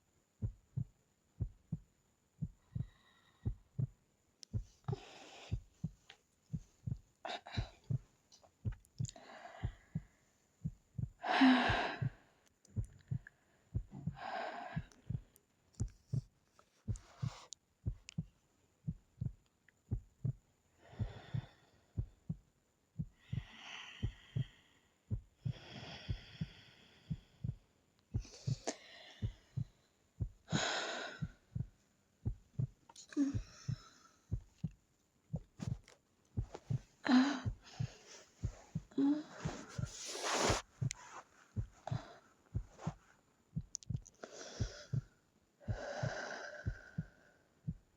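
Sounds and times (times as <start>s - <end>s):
heartbeat thumps: 0.4s - 47.9s
woman breathing slowly: 2.4s - 18.3s, 20.2s - 22.4s, 23.0s - 34.7s, 35.3s - 47.8s.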